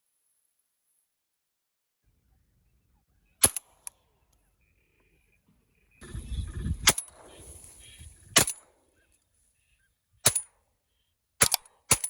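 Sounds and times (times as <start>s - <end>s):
shotgun shots: 3.4s - 3.9s, 6.8s - 8.8s, 10.2s - 10.6s, 11.4s - 12.0s
low rumble: 6.0s - 8.4s.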